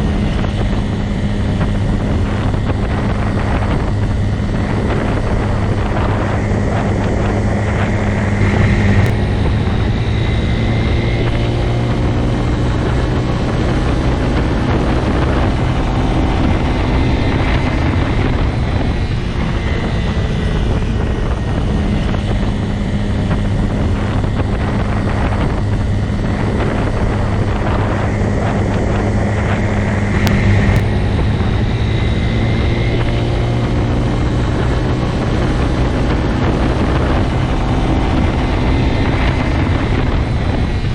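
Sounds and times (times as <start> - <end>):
motorcycle engine running steadily: 0.0 - 40.9.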